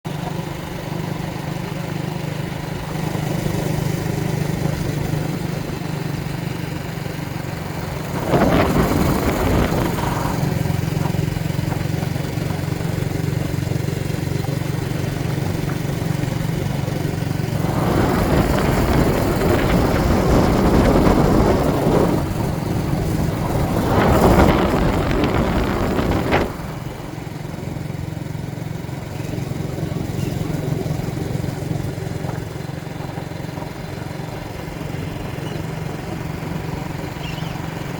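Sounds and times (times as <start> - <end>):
motor running low hum: 2.8 - 32.4
rushes of noise: 3.1 - 28.0.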